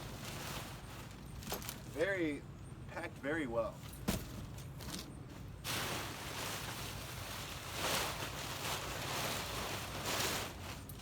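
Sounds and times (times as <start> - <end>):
packing material rustling: 5.7 - 11.0.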